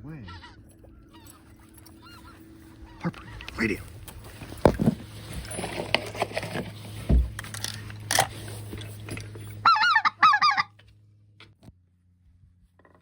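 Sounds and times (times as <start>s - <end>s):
goose calling: 0.0s - 4.7s, 9.6s - 10.8s.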